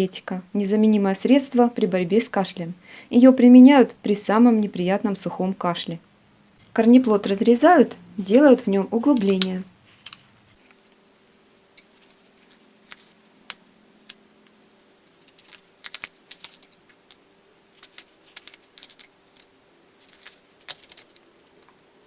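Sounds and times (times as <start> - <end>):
crisp scraping of radish: 14.6 - 16.6.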